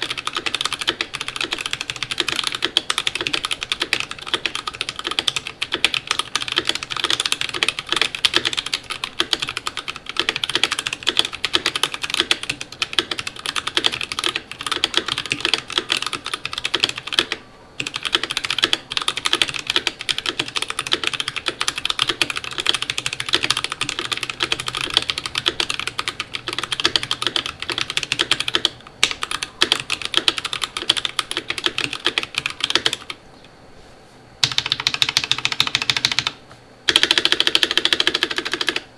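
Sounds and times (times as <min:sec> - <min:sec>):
typing on mechanical keyboard: 0:00.0 - 0:33.2, 0:34.4 - 0:38.9.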